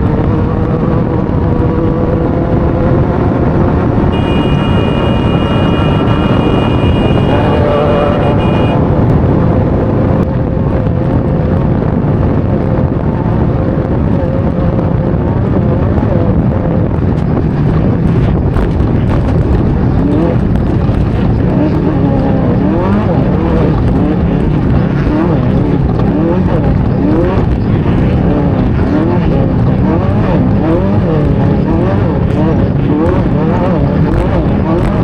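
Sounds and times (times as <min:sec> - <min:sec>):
wind noise: 0:00.0 - 0:35.0
race vehicle engine revving: 0:01.7 - 0:08.8, 0:21.4 - 0:35.0.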